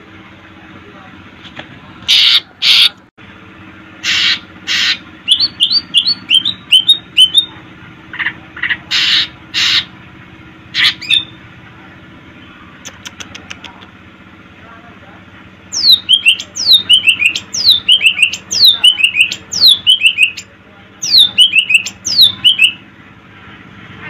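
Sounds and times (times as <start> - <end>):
bird singing harsh notes: 4.0 - 7.6, 10.7 - 11.4, 15.7 - 22.8
bird chirps: 4.1 - 7.6, 15.7 - 22.8.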